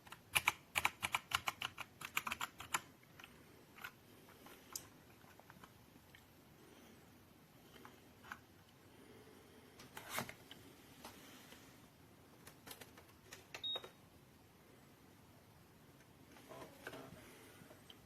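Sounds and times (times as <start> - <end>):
mechanical keyboard clicks: 0.0 - 4.0.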